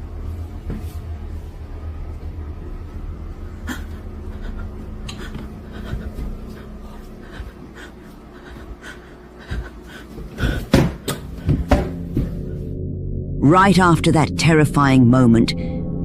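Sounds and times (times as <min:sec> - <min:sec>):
low steady hum: 0:00.0 - 0:16.0
dog panting: 0:03.7 - 0:10.7.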